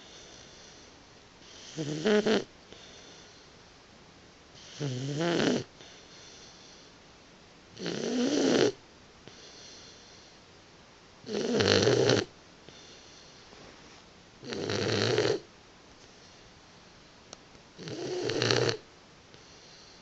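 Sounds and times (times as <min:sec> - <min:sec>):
puppy snoring: 0:00.0 - 0:03.5, 0:04.5 - 0:06.9, 0:07.7 - 0:10.4, 0:11.2 - 0:15.5, 0:17.8 - 0:20.0
dog breathing softly: 0:00.0 - 0:03.6, 0:05.7 - 0:07.0, 0:09.2 - 0:10.4, 0:12.6 - 0:14.1, 0:19.3 - 0:20.0.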